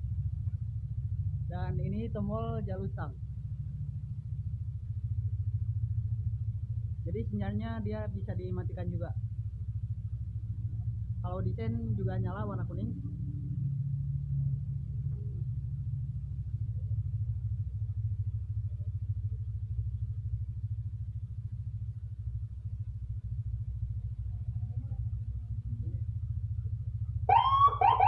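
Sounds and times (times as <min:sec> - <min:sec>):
steady low rumble: 0:00.0 - 0:28.0
motorcycle siren whoops: 0:27.2 - 0:28.0.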